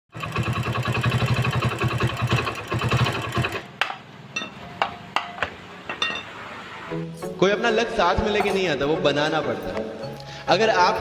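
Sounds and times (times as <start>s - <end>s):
motorcycle engine running: 0.1s - 3.7s.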